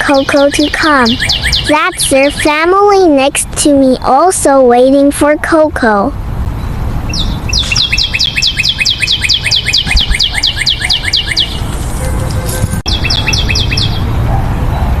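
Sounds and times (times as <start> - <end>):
small bird chirping: 0.0 - 2.7, 6.6 - 11.8, 12.9 - 14.1.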